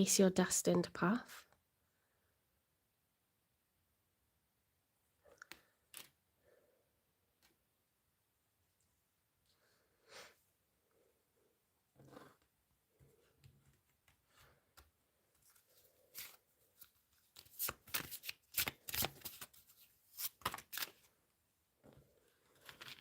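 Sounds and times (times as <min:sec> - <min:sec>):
cards being shuffled: 0:15.4 - 0:21.1, 0:22.6 - 0:23.0.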